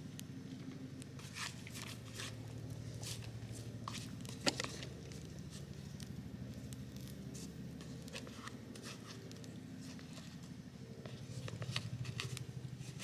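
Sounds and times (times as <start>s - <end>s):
campfire crackling and popping: 0.0s - 12.6s
steady low hum: 0.0s - 13.0s.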